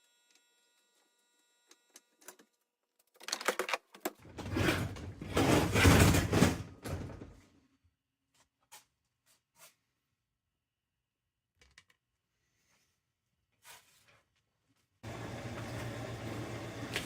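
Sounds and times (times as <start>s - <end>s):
dishwasher rack sliding clatter: 4.2s - 7.4s.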